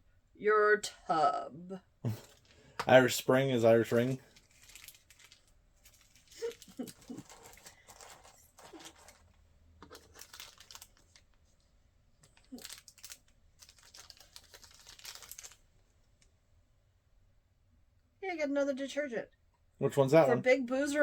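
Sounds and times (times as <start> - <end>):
packaging crinkling and tearing: 3.9 - 11.6, 12.2 - 15.8.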